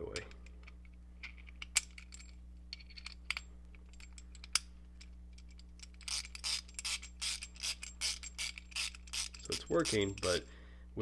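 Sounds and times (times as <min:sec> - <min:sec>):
small metal clicks: 0:00.1 - 0:10.4
quick metallic rasps: 0:06.0 - 0:10.5.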